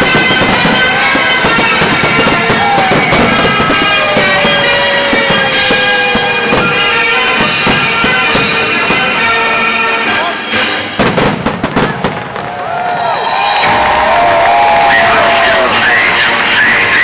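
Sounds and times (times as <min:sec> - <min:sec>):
fireworks whistling: 0:00.0 - 0:12.6
fireworks crackling and banging: 0:00.0 - 0:17.0.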